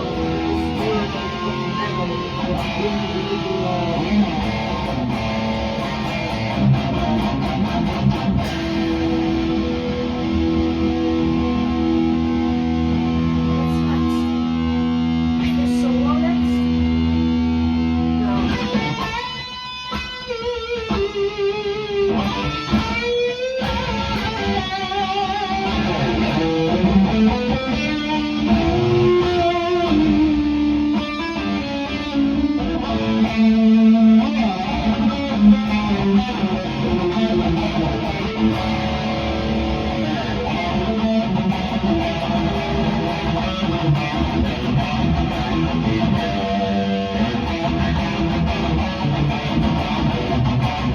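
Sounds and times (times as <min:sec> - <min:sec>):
electric guitar lead: 0:00.0 - 0:50.9
metal band playing: 0:00.0 - 0:50.9.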